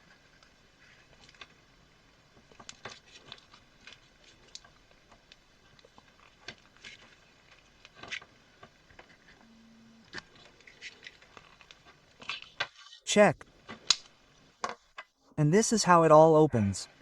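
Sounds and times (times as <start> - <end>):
plastic parts clicking and scraping: 2.5 - 9.4.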